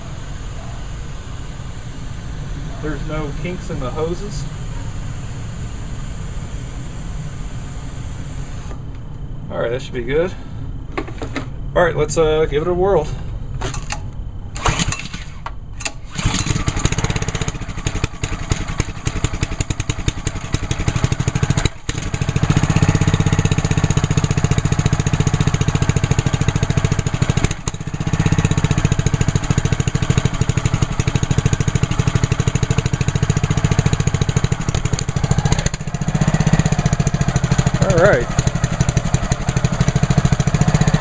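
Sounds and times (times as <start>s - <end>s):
small engine running: 0.0s - 8.8s, 14.6s - 41.0s
small engine pull-start: 13.6s - 41.0s.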